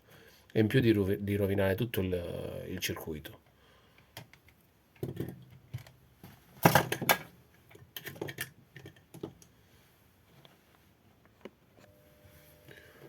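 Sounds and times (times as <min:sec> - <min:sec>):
tools clicking and knocking: 0:04.2 - 0:06.0, 0:06.6 - 0:09.5.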